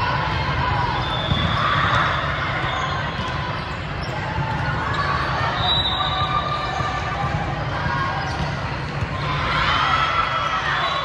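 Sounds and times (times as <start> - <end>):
ball bouncing on court: 1.1 - 2.2, 3.1 - 5.4, 6.5 - 9.3.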